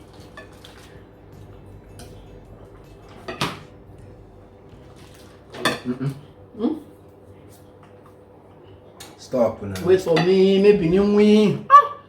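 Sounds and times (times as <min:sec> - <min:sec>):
dishes and cutlery clinking: 0:00.0 - 0:03.8, 0:04.8 - 0:06.3, 0:07.8 - 0:10.6
faint steady hum: 0:00.0 - 0:12.0
dishes clattering: 0:02.8 - 0:03.8, 0:04.9 - 0:06.3.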